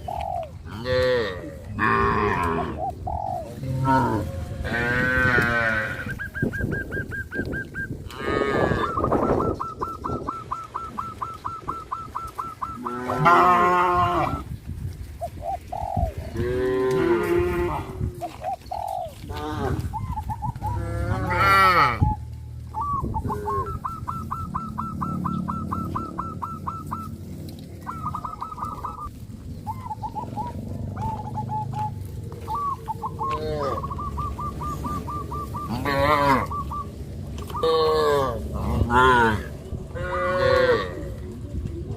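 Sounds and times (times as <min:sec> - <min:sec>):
cattle mooing: 0:00.7 - 0:02.8, 0:03.6 - 0:06.2, 0:08.0 - 0:09.0, 0:12.8 - 0:14.4, 0:16.4 - 0:18.1, 0:20.6 - 0:22.1, 0:33.3 - 0:34.0, 0:35.6 - 0:36.5, 0:37.6 - 0:41.2.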